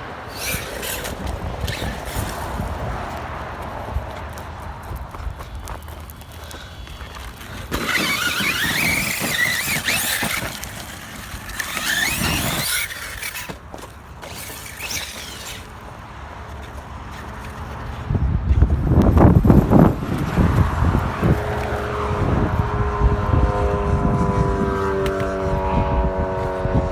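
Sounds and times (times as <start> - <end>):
electric motor whining: 0.0 - 2.9, 6.6 - 15.9.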